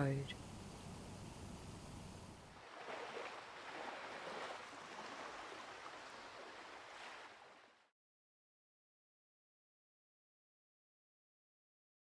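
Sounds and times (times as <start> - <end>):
running water: 0.0 - 7.8.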